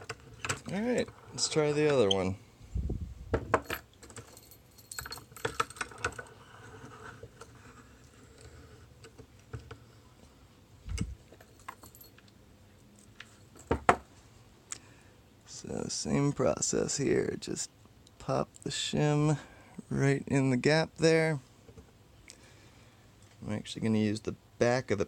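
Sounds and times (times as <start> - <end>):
padlocks and tools clattering: 3.5 - 7.5, 11.0 - 14.1.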